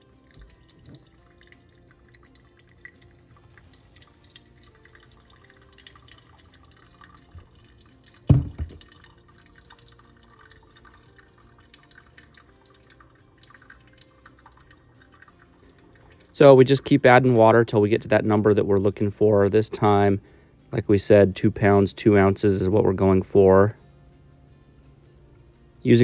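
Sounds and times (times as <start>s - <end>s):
water dripping and trickling: 0.0s - 26.0s
low thump: 8.3s - 8.8s.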